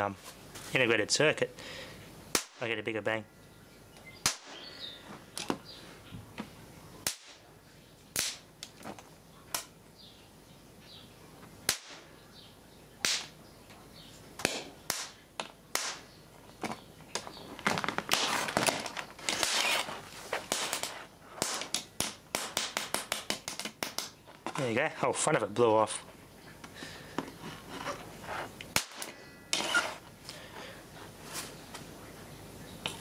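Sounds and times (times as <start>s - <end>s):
electrical snaps and crackling: 8.2s - 9.7s, 14.4s - 24.8s, 28.6s - 30.0s.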